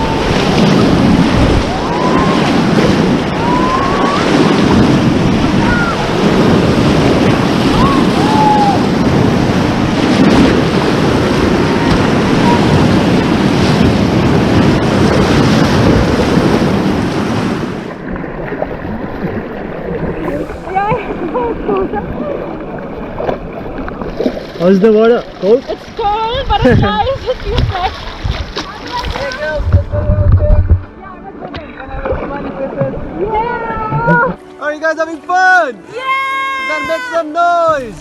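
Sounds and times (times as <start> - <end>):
river water rushing: 0.0 - 26.6
wind buffeting microphone: 0.0 - 34.4.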